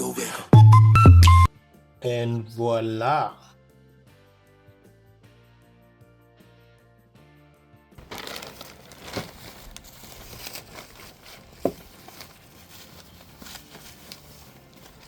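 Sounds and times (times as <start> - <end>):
plastic packaging rustling: 8.0 - 15.0.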